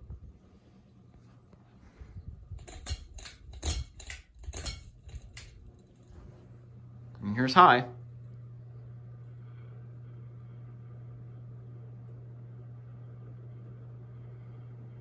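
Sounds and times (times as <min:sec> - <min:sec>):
fan motor humming: 0:00.0 - 0:15.0
pull chain metallic clicks: 0:02.6 - 0:05.8.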